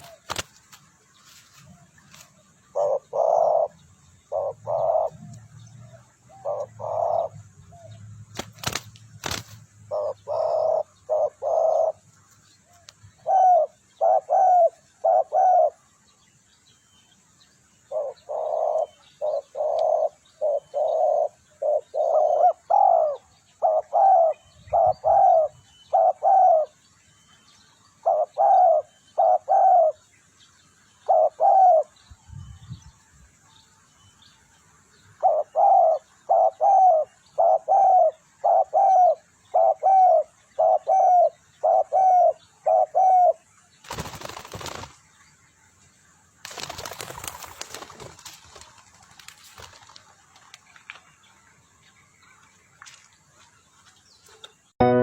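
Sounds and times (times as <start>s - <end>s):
peacock calling: 1.6s - 8.0s, 9.2s - 12.0s, 12.7s - 15.8s, 17.9s - 30.0s, 30.7s - 32.6s, 35.1s - 43.4s.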